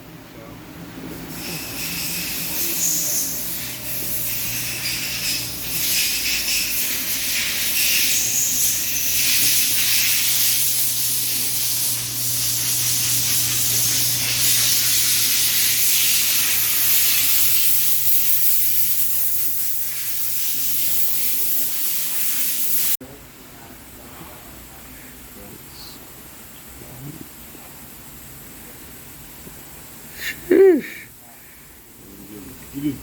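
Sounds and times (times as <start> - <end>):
hiss of air spray: 1.1 - 23.0.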